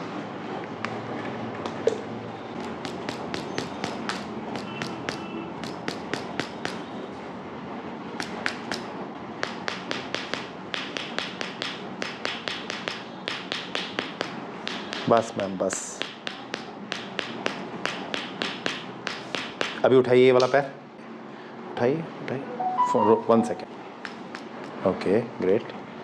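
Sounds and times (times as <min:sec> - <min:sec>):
sharp taps or clicks: 0:02.6 - 0:06.8, 0:08.2 - 0:15.1, 0:24.0 - 0:24.8.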